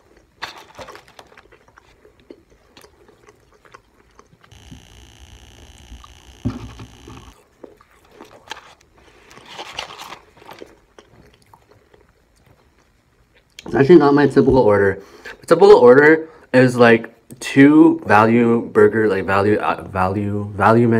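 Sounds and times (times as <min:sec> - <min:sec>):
chewing and biting food: 0:00.0 - 0:13.8
multi-tone hum: 0:04.2 - 0:13.3.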